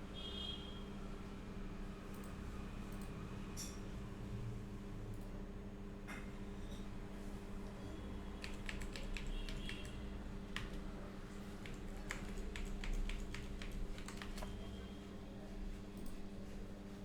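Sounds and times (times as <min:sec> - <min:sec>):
low electrical hum: 0:00.0 - 0:17.0
keyboard keystroke clicks: 0:08.4 - 0:10.8, 0:11.6 - 0:14.6.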